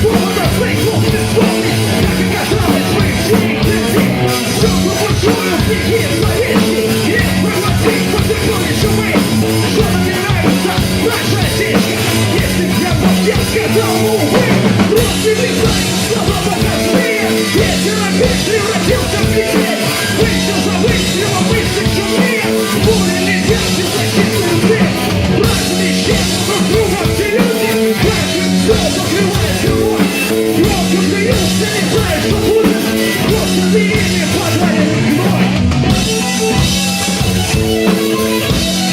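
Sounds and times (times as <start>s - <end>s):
drum kit: 0.0s - 38.9s
rock band playing punk rock: 0.0s - 38.9s.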